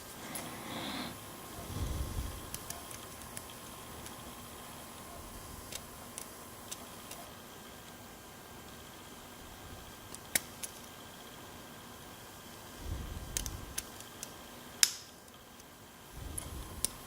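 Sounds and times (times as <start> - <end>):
low handling rumble: 1.3 - 3.5, 12.8 - 13.9, 16.1 - 17.0.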